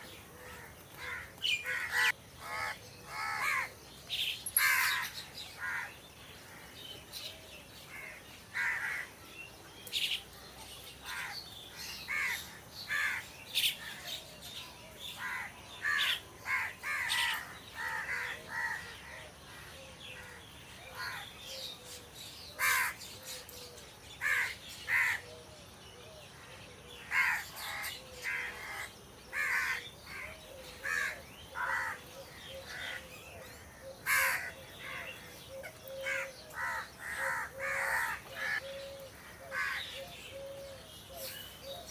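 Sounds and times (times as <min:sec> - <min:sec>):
crows cawing: 0:00.4 - 0:03.7, 0:04.6 - 0:05.9, 0:07.9 - 0:09.1, 0:12.1 - 0:13.3, 0:15.2 - 0:20.4, 0:22.6 - 0:23.0, 0:24.2 - 0:25.2, 0:27.0 - 0:33.1, 0:33.8 - 0:40.0.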